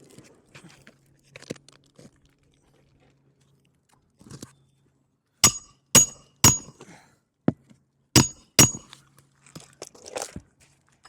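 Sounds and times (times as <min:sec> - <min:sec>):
hammer striking nails: 0:05.4 - 0:06.7, 0:08.2 - 0:08.8.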